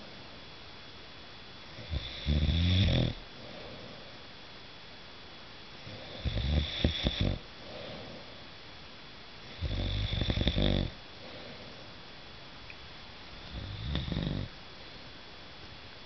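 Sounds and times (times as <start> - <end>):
man snoring: 1.8 - 3.2, 5.9 - 7.4, 9.6 - 11.0, 13.5 - 14.5
soft breathing: 3.4 - 4.4, 5.8 - 8.6, 11.1 - 12.0.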